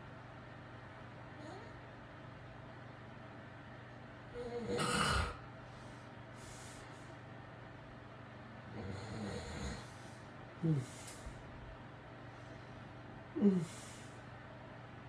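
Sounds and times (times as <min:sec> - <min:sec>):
man snoring: 0:04.4 - 0:05.4, 0:08.7 - 0:09.9, 0:13.4 - 0:13.8.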